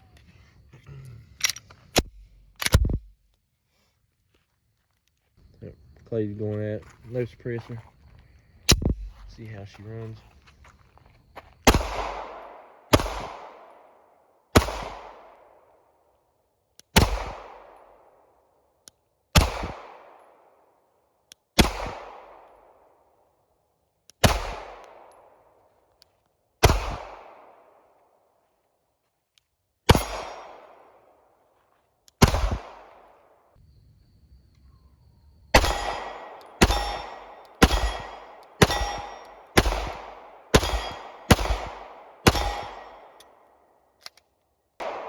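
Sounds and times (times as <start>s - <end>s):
pistol shots echoing: 11.7s - 15.8s, 16.9s - 18.2s, 19.3s - 20.6s, 21.5s - 23.0s, 24.2s - 25.6s, 26.6s - 28.0s, 29.9s - 31.4s, 32.2s - 33.4s, 35.5s - 43.6s, 44.8s - 45.0s.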